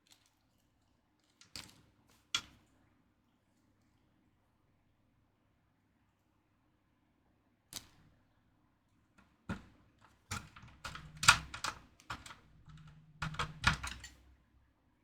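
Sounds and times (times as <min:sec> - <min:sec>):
clicks and knocks of parts handled: 0:09.5 - 0:14.4.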